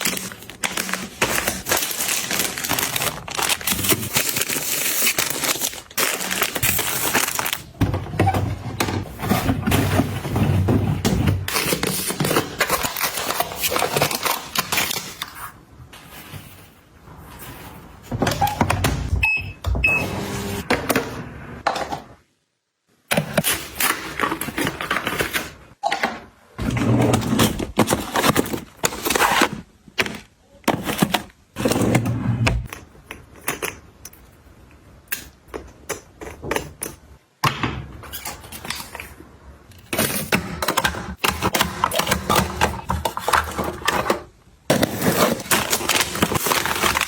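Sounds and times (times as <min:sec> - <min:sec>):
packaging rustling: 0:00.0 - 0:08.1, 0:40.0 - 0:47.0.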